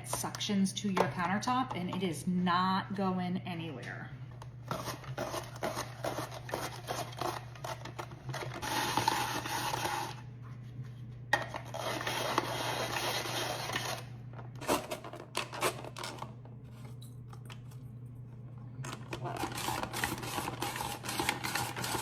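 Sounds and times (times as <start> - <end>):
rotary cheese grater rasping: 19.2 - 22.0.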